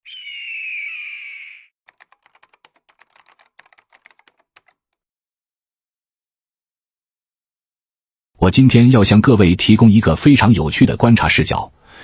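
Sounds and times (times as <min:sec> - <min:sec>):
rapid keyboard typing: 0:01.9 - 0:04.9.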